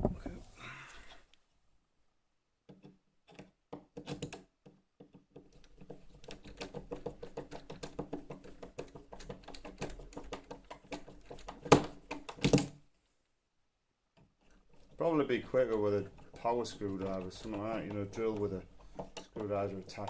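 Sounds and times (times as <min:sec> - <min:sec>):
screwdriver clicking and scraping: 0:05.0 - 0:12.5, 0:14.2 - 0:20.0.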